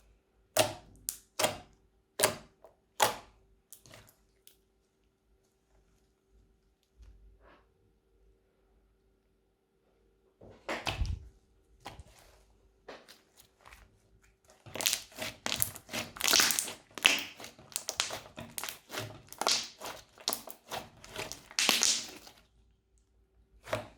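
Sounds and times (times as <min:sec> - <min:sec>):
slime squelching and crackling: 0:14.4 - 0:22.6.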